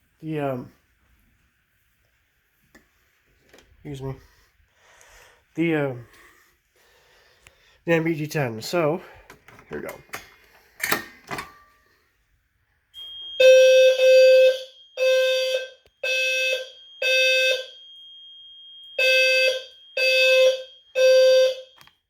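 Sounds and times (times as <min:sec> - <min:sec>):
alarm sounder beeping: 0:13.0 - 0:21.8.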